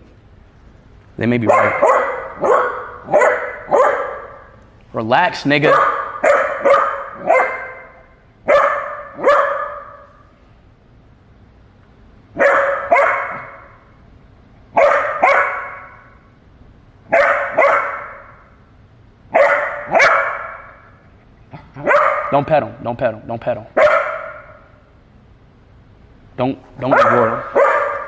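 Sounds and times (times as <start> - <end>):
puppy barking: 1.4 - 4.6, 5.6 - 10.3, 12.4 - 13.9, 14.7 - 16.3, 17.1 - 18.5, 19.3 - 22.5, 23.7 - 24.8, 26.8 - 28.0.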